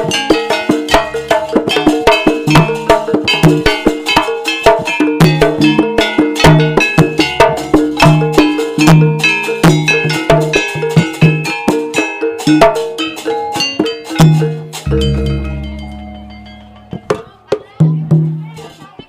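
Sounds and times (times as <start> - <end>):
gamelan gongs ringing: 0.0 - 10.9, 13.0 - 17.9
deep gong stroke: 14.9 - 17.3.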